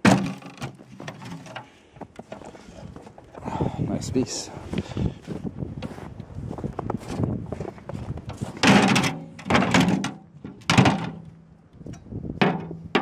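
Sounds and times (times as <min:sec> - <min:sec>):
scrap metal clanking: 0:08.3 - 0:11.2.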